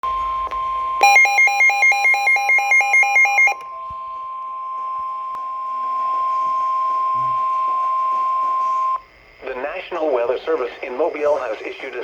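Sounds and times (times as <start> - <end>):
weather radio alarm beeping rapidly: 1.0 - 3.7
steady high tone: 1.0 - 9.0.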